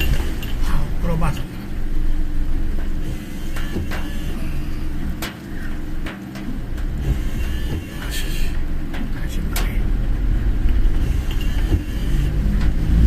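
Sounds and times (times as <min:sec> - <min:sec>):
car engine and road rumble: 0:00.0 - 0:13.0
sharp clicks and knocks: 0:02.8 - 0:04.1, 0:05.0 - 0:09.8.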